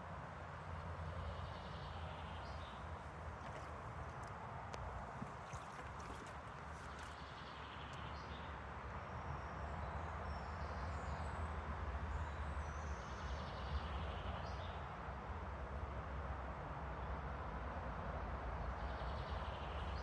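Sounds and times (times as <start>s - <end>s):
flowing water: 0.6s - 8.0s.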